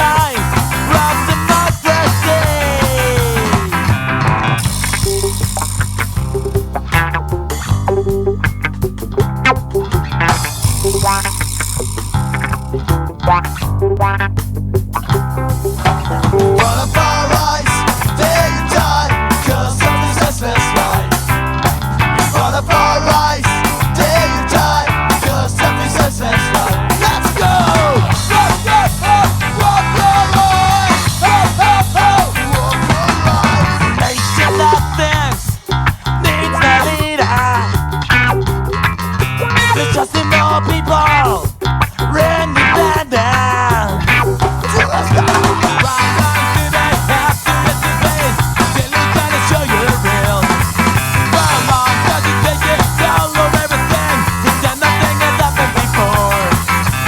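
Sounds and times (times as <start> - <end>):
person singing: 0.0 - 3.9, 16.4 - 37.8, 39.6 - 57.0
punk rock music: 0.0 - 57.0
steady drum beat: 0.0 - 57.0.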